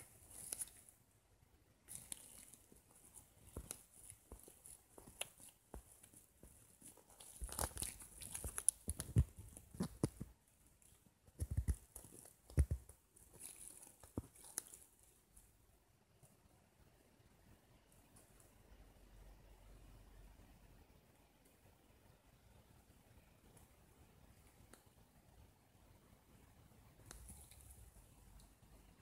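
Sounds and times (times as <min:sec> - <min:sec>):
packaging crinkling and rustling: 0:00.0 - 0:00.9, 0:01.9 - 0:15.0.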